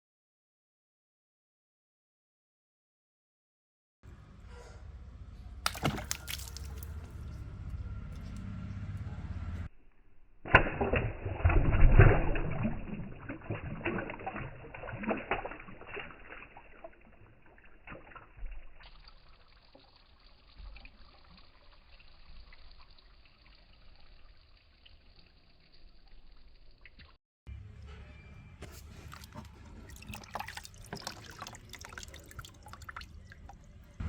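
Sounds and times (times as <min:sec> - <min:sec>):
water splashing and pouring: 0:05.6 - 0:07.4, 0:10.5 - 0:27.2, 0:28.6 - 0:34.0
water trickling and dripping: 0:05.6 - 0:08.5, 0:10.5 - 0:27.2, 0:28.8 - 0:34.0.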